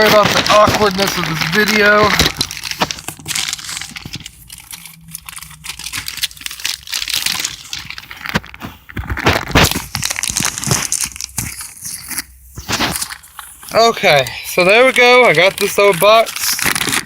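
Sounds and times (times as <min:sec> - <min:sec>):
cardboard box rustling and tearing: 0:00.0 - 0:17.0.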